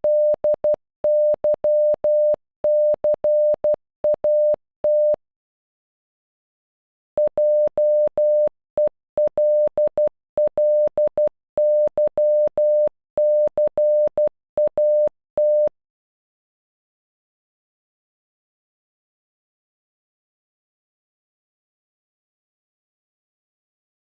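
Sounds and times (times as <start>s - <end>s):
electronic morse code beeps: 0.0s - 5.2s, 7.2s - 15.7s.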